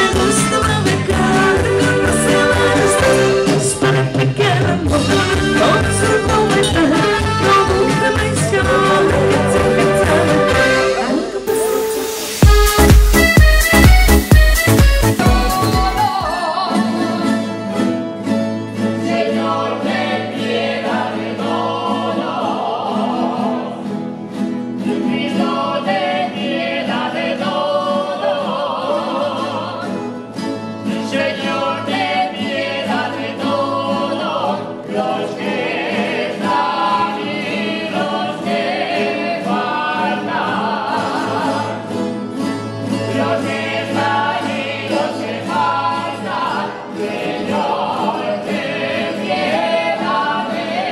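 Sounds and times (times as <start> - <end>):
voices singing with vibrato: 0.0 - 17.9, 18.8 - 24.1, 24.8 - 42.1, 42.9 - 50.9
instrumental accompaniment: 0.0 - 19.6.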